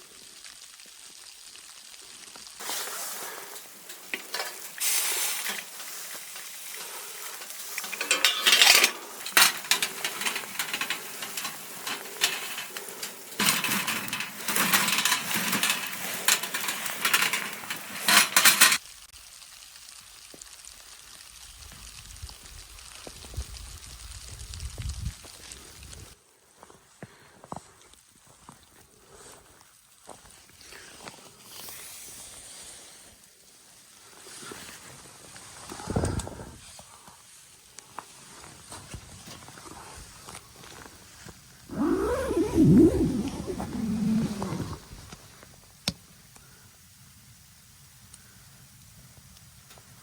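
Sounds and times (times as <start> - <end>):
food sizzling in a pan: 0.0 - 13.4, 18.8 - 25.8
metal utensil clinking on pan: 7.8 - 18.8.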